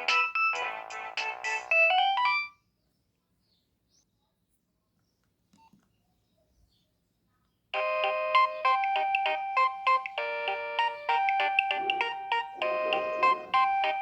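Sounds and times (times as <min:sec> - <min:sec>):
electronic ringtone melody: 0:00.0 - 0:02.5, 0:07.8 - 0:14.0.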